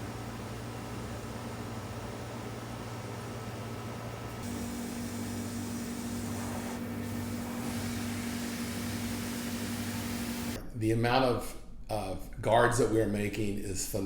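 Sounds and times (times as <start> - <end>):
workshop machinery humming: 0.0 - 10.6.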